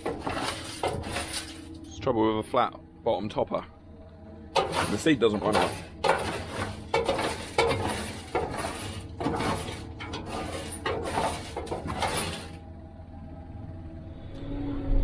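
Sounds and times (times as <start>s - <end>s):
metallic clattering and scraping: 0.0s - 1.9s, 4.5s - 12.6s
tractor engine hum: 0.0s - 3.0s, 3.8s - 14.4s.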